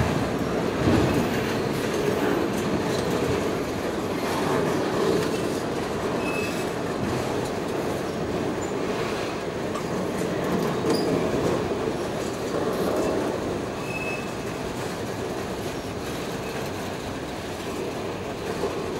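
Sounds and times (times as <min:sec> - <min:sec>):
train wheels rumbling on rail: 0:00.0 - 0:18.9
wheel squeal: 0:06.2 - 0:06.7, 0:13.8 - 0:14.4.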